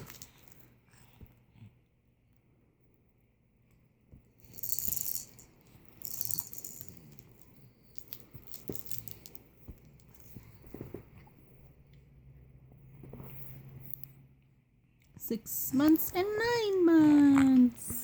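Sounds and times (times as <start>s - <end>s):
small hard objects rattling: 4.4s - 10.4s.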